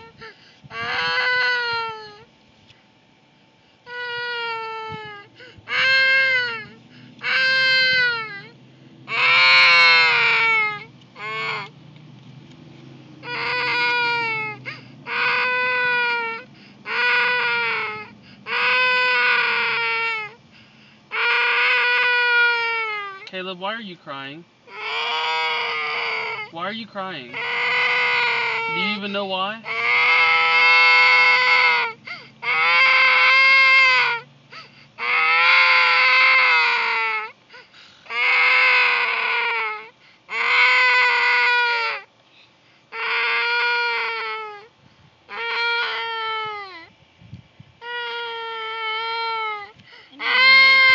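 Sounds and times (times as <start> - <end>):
toddler crying: 0.0 - 2.3, 3.9 - 11.7, 13.2 - 20.4, 21.1 - 23.3, 24.7 - 26.5, 27.3 - 29.0, 29.6 - 42.1, 42.9 - 44.7, 45.3 - 46.9, 47.8 - 50.9
young child crying: 0.0 - 2.3, 3.9 - 11.7, 21.1 - 23.3, 24.7 - 26.5, 45.3 - 46.9, 47.8 - 50.9
child gasping for breath: 0.2 - 0.7, 37.5 - 38.1, 49.8 - 50.2.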